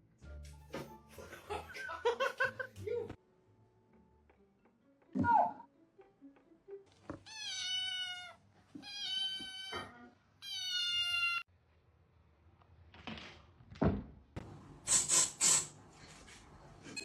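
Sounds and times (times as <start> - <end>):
cat meowing: 7.3 - 11.4.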